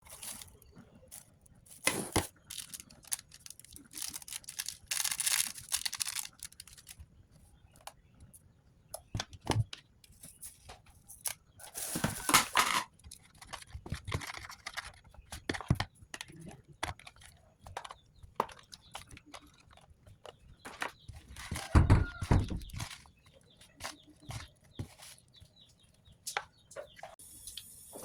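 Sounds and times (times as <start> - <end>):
kitchen knocks and clicks: 20.6 - 23.0.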